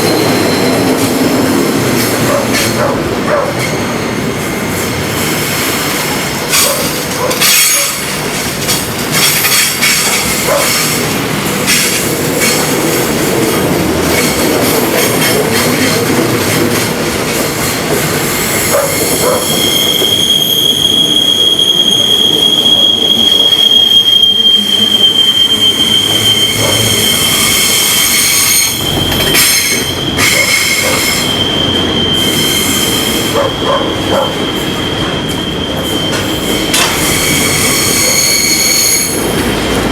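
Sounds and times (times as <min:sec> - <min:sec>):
train wheels rumbling on rails: 0:00.0 - 0:39.9
high-pitched wheel squeal: 0:18.5 - 0:39.6.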